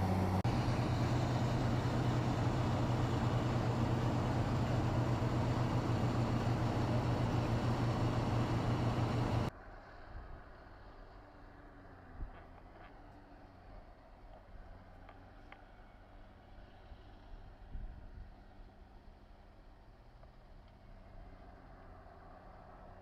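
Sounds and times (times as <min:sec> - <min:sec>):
motor-driven machine humming: 0:00.0 - 0:09.5.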